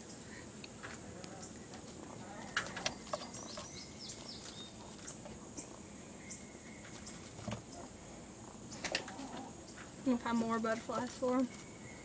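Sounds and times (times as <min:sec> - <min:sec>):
falling bird chirps: 0:01.4 - 0:08.0.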